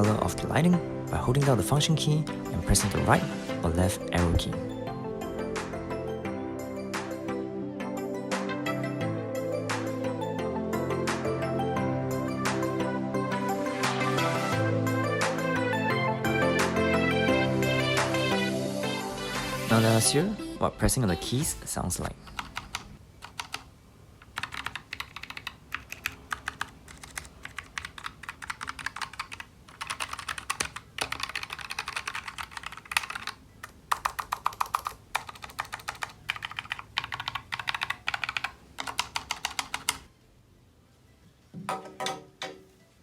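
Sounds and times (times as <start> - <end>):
mechanical keyboard typing: 22.3 - 40.1.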